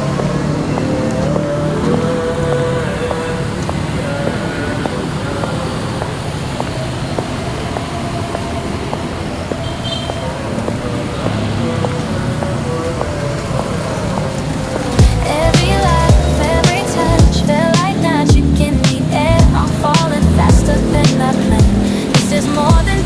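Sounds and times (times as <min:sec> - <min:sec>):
road traffic noise: 0:00.0 - 0:23.0
faint music: 0:10.2 - 0:23.0.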